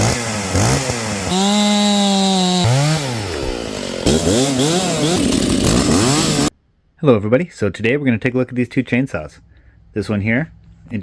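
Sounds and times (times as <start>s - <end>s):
chainsaw revving: 0.0s - 6.5s.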